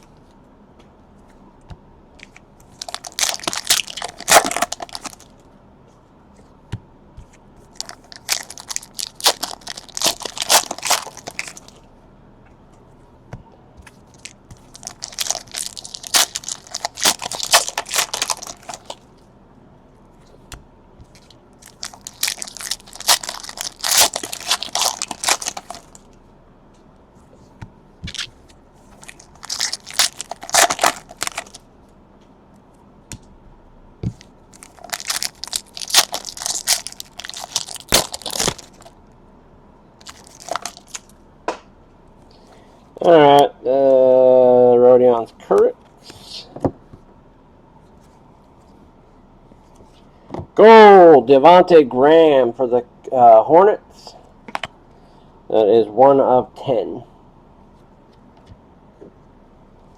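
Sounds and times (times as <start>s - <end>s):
foil wrappers tearing and crinkling: 2.7s - 5.3s, 7.7s - 11.8s, 14.1s - 19.0s, 21.2s - 26.1s, 28.1s - 28.3s, 29.0s - 31.6s, 34.6s - 38.9s, 40.0s - 41.1s.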